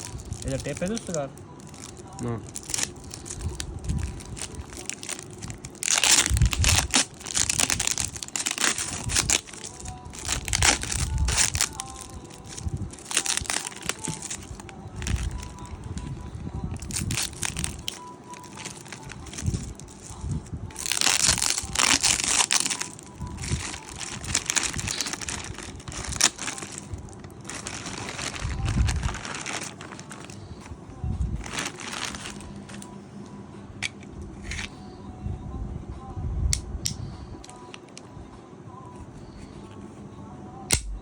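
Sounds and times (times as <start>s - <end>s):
plastic packaging crinkling: 0.0s - 30.7s, 31.4s - 32.9s.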